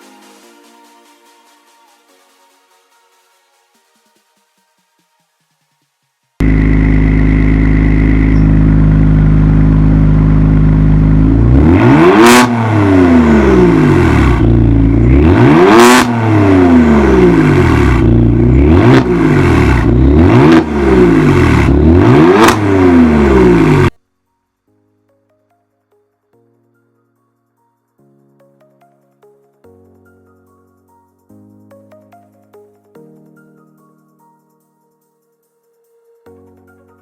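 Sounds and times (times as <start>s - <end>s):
car engine idling and revving: 6.4s - 24.0s.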